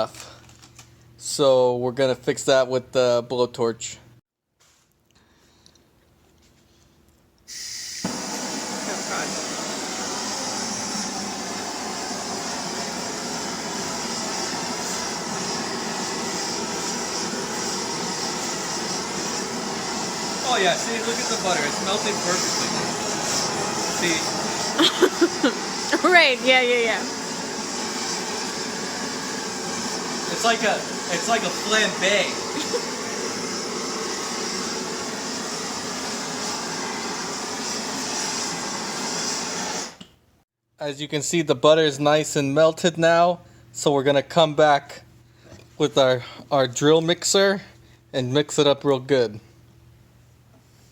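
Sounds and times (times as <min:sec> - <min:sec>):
blowtorch flame hissing: 0:07.5 - 0:40.1.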